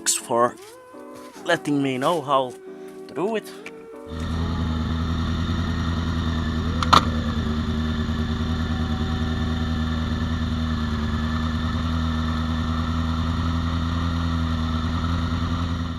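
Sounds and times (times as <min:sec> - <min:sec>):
motorcycle engine idling: 0:04.1 - 0:15.9.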